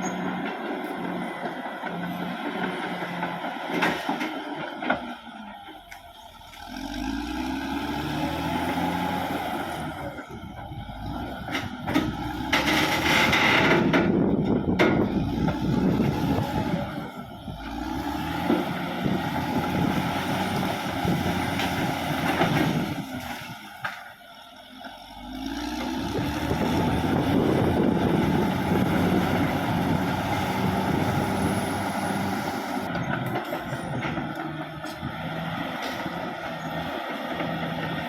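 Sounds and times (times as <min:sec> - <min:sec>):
bulldozer diesel engine: 0:00.0 - 0:38.0
knocks and clanks: 0:11.5 - 0:15.6.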